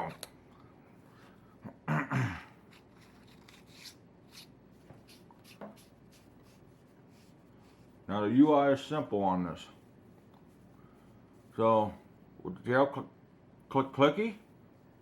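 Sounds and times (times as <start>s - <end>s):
faint rubbing: 2.7s - 12.0s.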